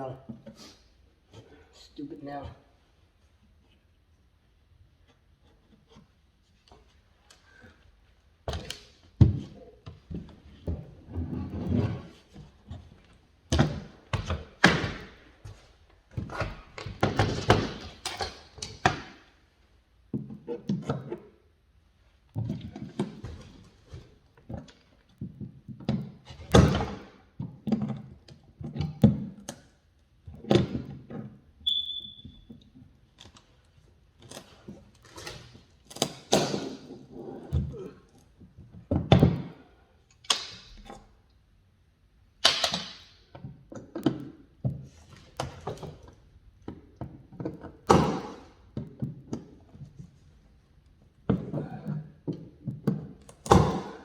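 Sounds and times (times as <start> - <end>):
high squeak: 31.7 - 32.4.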